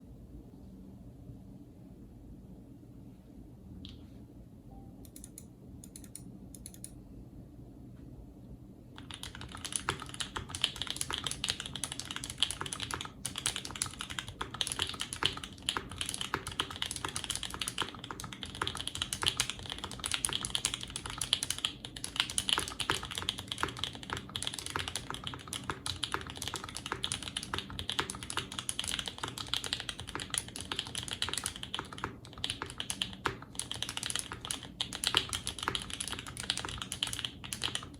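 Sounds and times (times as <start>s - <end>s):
rapid mechanical keyboard typing: 9.0s - 37.9s.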